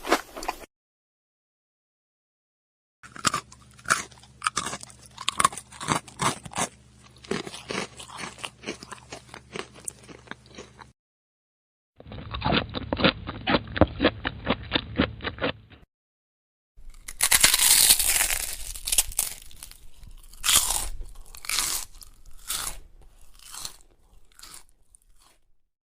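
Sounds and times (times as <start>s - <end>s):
crunchy food chewing: 3.0s - 11.0s, 12.0s - 15.9s, 16.8s - 25.5s.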